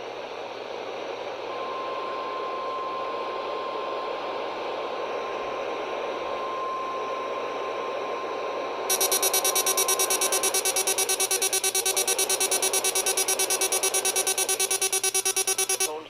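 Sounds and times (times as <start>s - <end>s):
pulsing electronic buzz: 8.9s - 15.9s
radio static: 8.9s - 16.0s
steady alarm tone: 8.9s - 16.0s.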